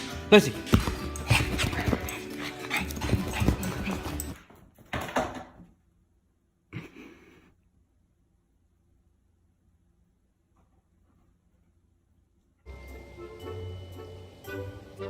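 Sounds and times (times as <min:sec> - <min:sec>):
dog whimpering: 0:01.3 - 0:04.4.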